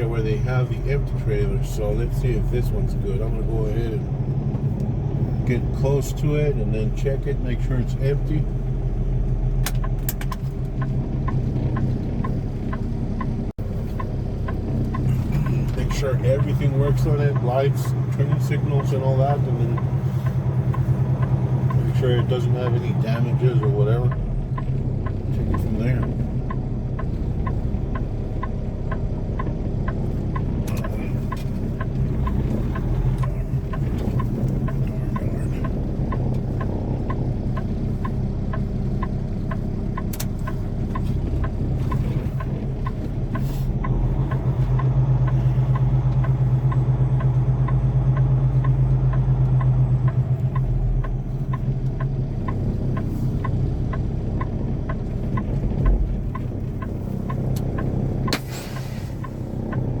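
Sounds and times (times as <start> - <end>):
diesel truck engine running: 0.0 - 60.0
light regular ticking: 0.1 - 60.0.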